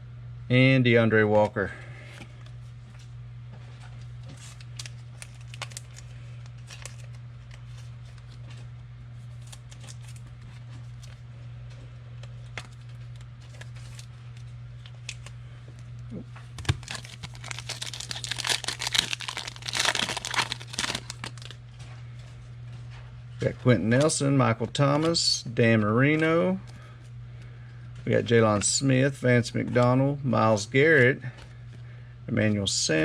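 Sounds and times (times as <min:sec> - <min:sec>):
foil wrapper tearing and crinkling: 0:04.4 - 0:08.4, 0:16.6 - 0:21.6.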